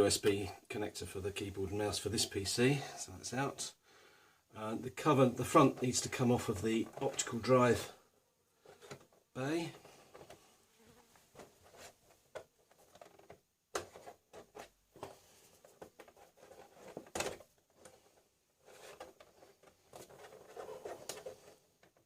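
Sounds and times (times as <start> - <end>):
plastic clicks and scraping: 8.6 - 10.4, 11.4 - 22.0.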